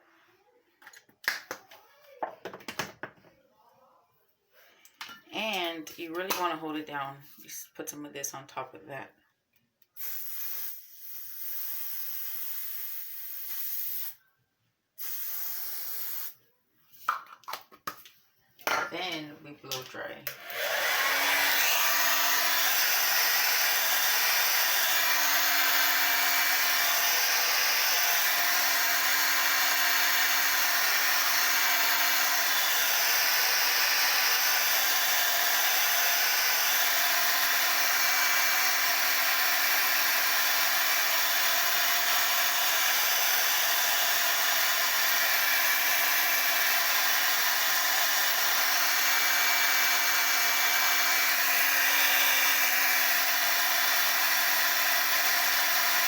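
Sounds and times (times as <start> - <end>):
hair dryer blowing: 19.7 - 56.0.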